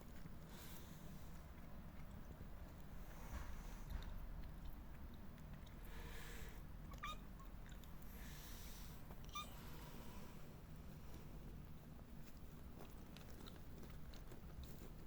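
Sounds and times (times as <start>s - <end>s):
kitten mewing: 6.9s - 7.5s, 9.2s - 9.6s.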